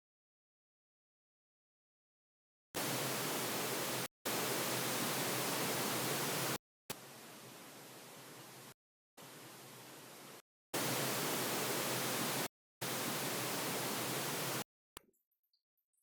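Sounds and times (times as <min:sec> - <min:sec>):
pink noise hiss bursts: 0:02.8 - 0:14.6.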